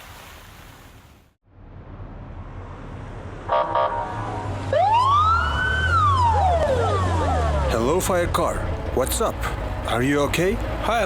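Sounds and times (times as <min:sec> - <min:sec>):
vehicle engine hum: 0:01.4 - 0:11.0
siren wailing: 0:03.5 - 0:07.8.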